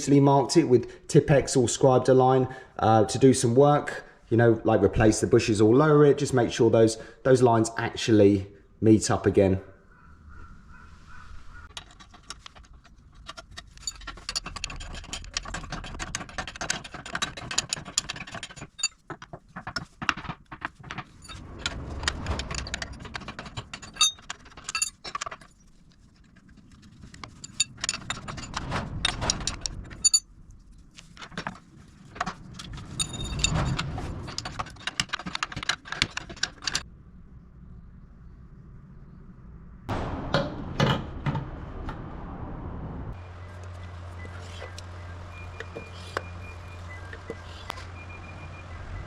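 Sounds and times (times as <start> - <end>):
metal tools clicking and rattling: 11.7 - 20.0, 20.7 - 30.3, 32.3 - 36.8.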